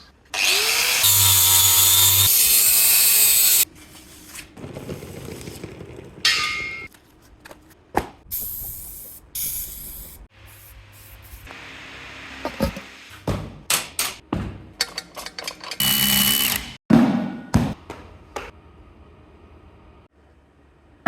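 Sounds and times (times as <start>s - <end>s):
power tool running on steel: 0.3s - 3.6s, 15.8s - 16.8s
workshop tool noises: 12.4s - 16.8s.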